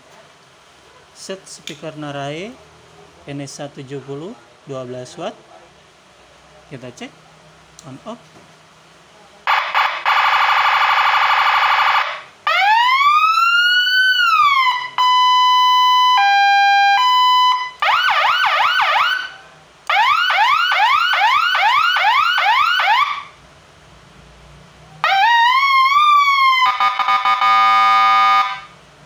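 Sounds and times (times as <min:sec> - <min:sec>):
fast rising siren whoops: 0:09.5 - 0:23.3, 0:25.0 - 0:28.7
siren through speaker: 0:09.5 - 0:23.3, 0:25.0 - 0:28.7
siren wail rising and falling: 0:09.5 - 0:23.4, 0:25.0 - 0:28.7
two-tone high-low siren: 0:09.5 - 0:23.4, 0:25.0 - 0:28.8
harsh buzzing horn tone: 0:26.9 - 0:28.7.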